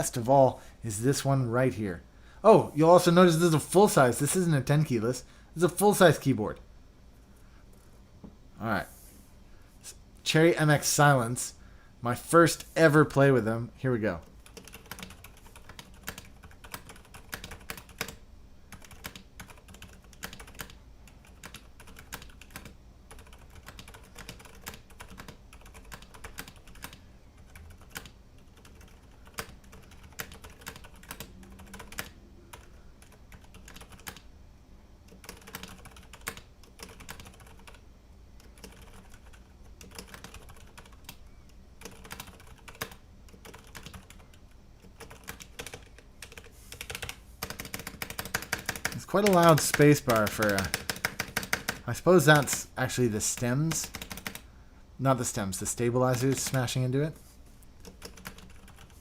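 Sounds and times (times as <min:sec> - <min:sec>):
muted mechanical keyboard typing: 0:14.3 - 0:34.3, 0:35.1 - 0:37.8, 0:38.4 - 0:41.2, 0:41.8 - 0:54.4, 0:56.1 - 0:56.7, 0:57.8 - 0:59.0.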